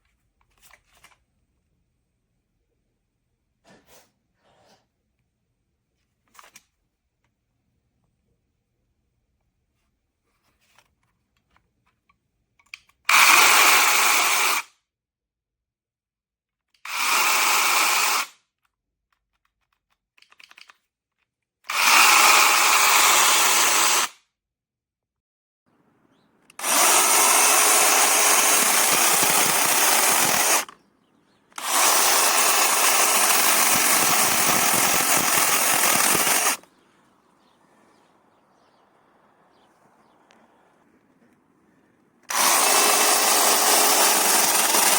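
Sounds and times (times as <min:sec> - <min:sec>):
cordless chainsaw running: 0:13.1 - 0:14.6, 0:16.9 - 0:18.3, 0:21.7 - 0:24.1, 0:26.5 - 0:44.9.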